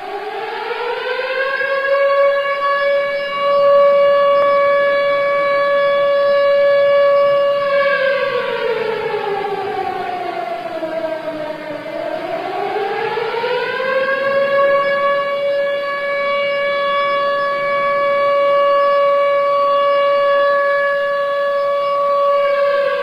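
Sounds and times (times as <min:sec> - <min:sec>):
civil defense siren: 0:00.0 - 0:23.0.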